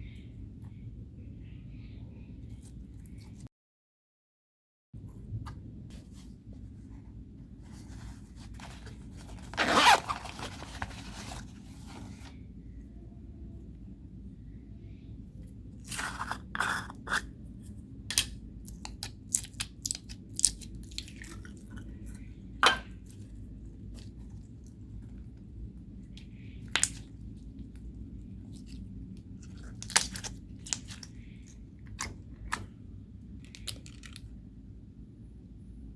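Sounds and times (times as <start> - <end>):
slime squelching: 18.1 - 25.4, 26.1 - 32.7, 33.4 - 34.3
slime squished by hand: 26.4 - 27.3, 28.4 - 32.7.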